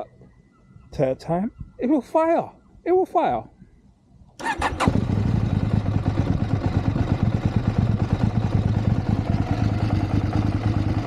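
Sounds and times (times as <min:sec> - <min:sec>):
motorcycle engine uneven idle: 0:04.4 - 0:11.0.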